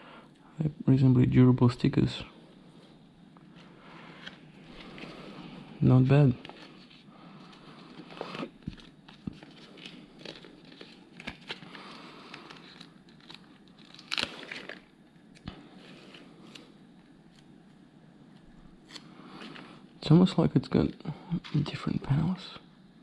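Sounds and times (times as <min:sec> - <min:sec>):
crinkly rustling of sticker sheet: 0:04.2 - 0:16.7.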